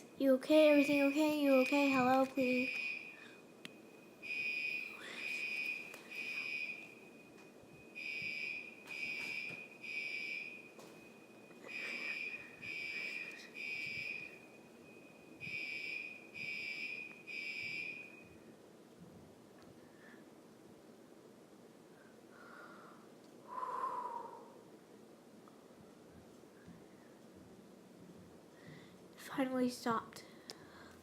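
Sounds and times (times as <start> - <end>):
fire alarm beeping: 0.1 - 18.5.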